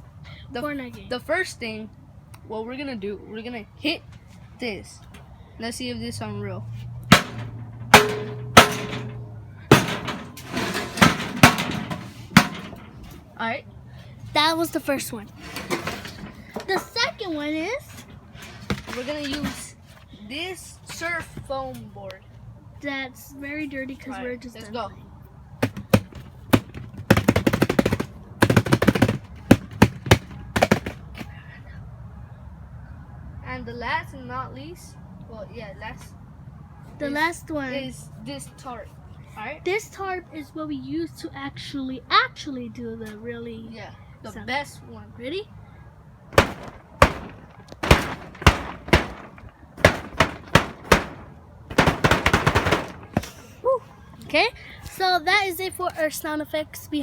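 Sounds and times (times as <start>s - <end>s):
hits on foam surfboard: 25.6s - 31.2s, 46.4s - 53.4s
tarp snapping sharp cracks: 46.4s - 53.5s.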